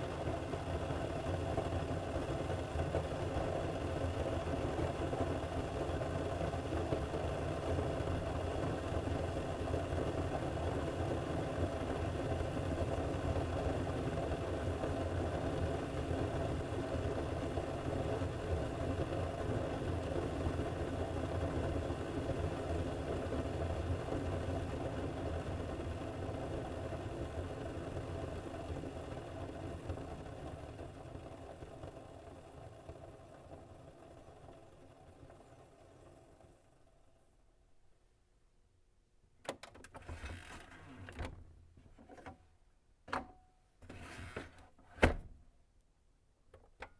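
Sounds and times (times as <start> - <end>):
coffee maker pump humming: 0.0 - 37.4.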